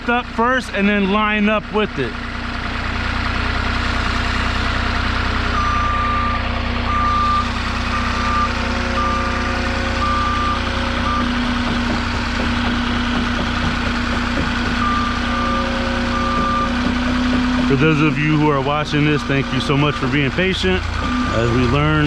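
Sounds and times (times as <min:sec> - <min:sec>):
forklift engine running: 0:00.0 - 0:22.0
reversing alarm beeping: 0:05.5 - 0:11.9, 0:14.6 - 0:18.4, 0:19.1 - 0:20.3, 0:21.0 - 0:22.0.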